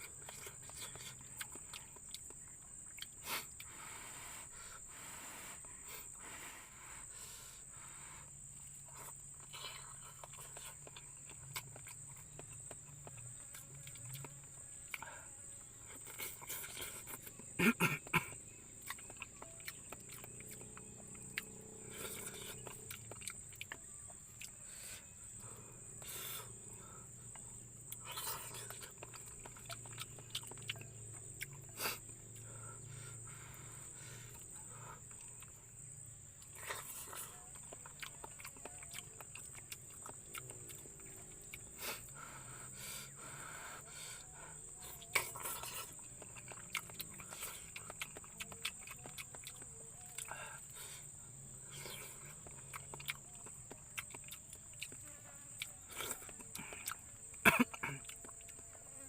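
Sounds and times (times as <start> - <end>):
crickets chirring: 0.0 - 59.0.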